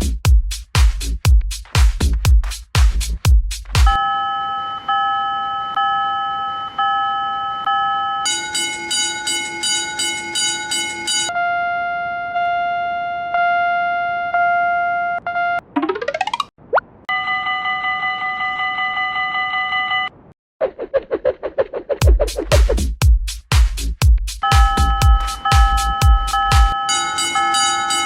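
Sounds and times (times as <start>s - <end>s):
railroad crossing warning bells: 3.9s - 11.3s, 17.1s - 20.2s, 24.4s - 28.0s.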